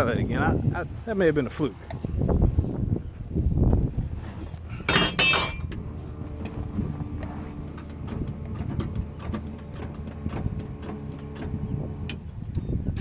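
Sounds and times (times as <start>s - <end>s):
engine running with ticks: 5.6s - 13.0s
car engine starting: 5.7s - 12.3s.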